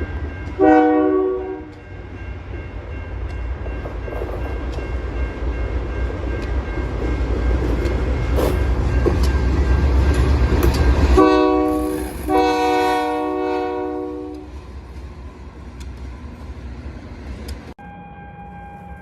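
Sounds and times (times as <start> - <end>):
train rumbling past: 0.0 - 19.0
locomotive air horn blasts: 0.6 - 1.8, 11.2 - 14.6
train wheels clicking: 1.6 - 13.3.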